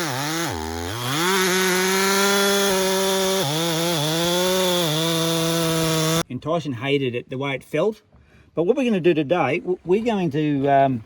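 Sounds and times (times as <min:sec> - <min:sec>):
chainsaw cutting through wood: 0:00.0 - 0:06.2.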